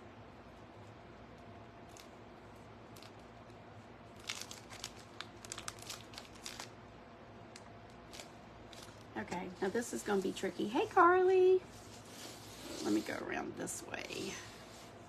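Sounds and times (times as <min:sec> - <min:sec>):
faint steady hum: 0:00.0 - 0:15.0
plastic bag crinkling: 0:02.9 - 0:03.3, 0:04.1 - 0:06.8, 0:07.5 - 0:10.2.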